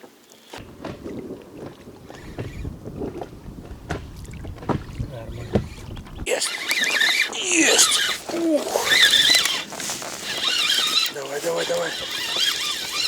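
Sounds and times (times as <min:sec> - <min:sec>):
water lapping against boat: 0:00.5 - 0:13.0
small knocks: 0:00.6 - 0:06.3
wind buffeting microphone: 0:00.6 - 0:06.3.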